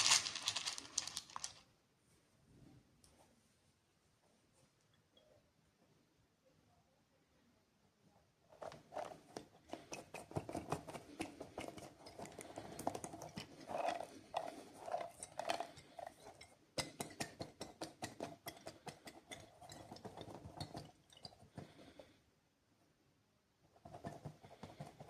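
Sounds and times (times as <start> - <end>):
plastic wrappers crinkling: 0.0 - 1.6.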